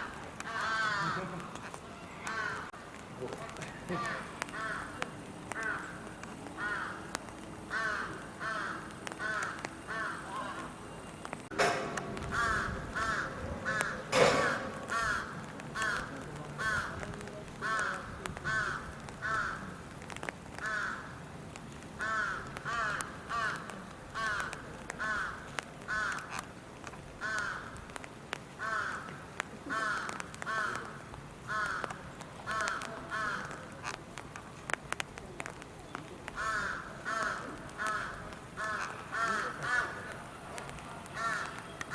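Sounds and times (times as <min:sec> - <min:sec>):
crow cawing: 0:00.4 - 0:01.4, 0:02.2 - 0:02.7, 0:03.9 - 0:10.7, 0:11.8 - 0:17.0, 0:17.6 - 0:19.8, 0:20.6 - 0:21.2, 0:22.0 - 0:26.4, 0:27.2 - 0:27.8, 0:28.6 - 0:33.6, 0:36.4 - 0:40.1, 0:41.1 - 0:41.9.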